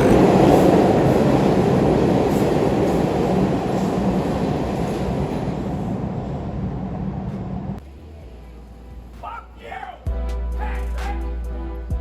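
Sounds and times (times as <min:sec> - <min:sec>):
subway train rumbling on track: 0:00.0 - 0:09.5.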